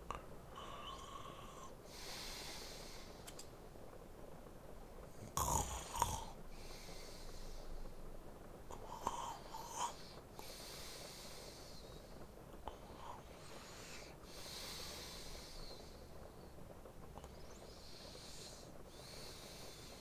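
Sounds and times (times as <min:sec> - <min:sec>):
man breathing heavily in sleep: 0:00.5 - 0:03.3, 0:05.6 - 0:08.0, 0:08.8 - 0:16.3, 0:17.2 - 0:20.0
small clicks: 0:03.2 - 0:03.6.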